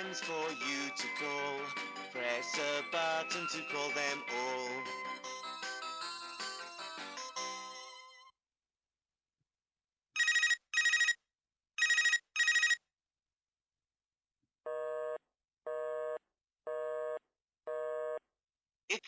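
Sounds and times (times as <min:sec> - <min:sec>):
toy telephone ringing: 0:10.2 - 0:11.2, 0:11.8 - 0:12.8.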